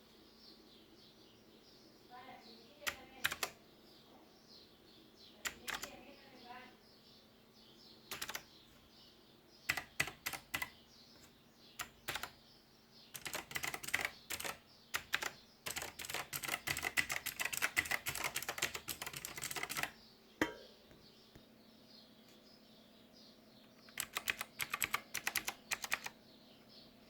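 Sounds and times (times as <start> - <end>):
mechanical keyboard typing: 2.8 - 3.6, 5.4 - 6.0, 8.1 - 8.5, 9.7 - 10.7, 11.8 - 12.4, 13.1 - 20.0, 23.9 - 26.2.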